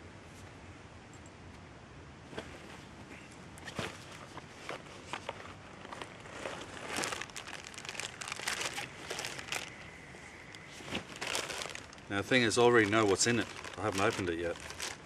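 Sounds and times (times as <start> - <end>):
parcel packaging crinkling: 5.3 - 9.9, 10.9 - 15.0.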